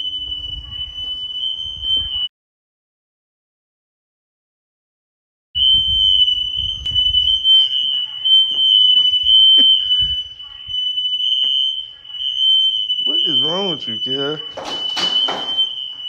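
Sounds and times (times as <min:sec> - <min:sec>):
smoke detector alarm tone: 0:00.0 - 0:02.3, 0:05.6 - 0:16.0
sharp knocks: 0:14.5 - 0:15.7.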